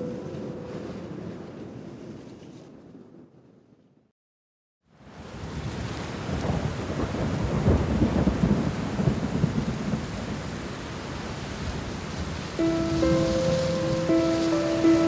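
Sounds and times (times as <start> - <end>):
steady rain: 0.0 - 3.6, 4.9 - 15.0
thunder rumbling: 0.0 - 3.8, 6.3 - 10.1, 12.6 - 15.0.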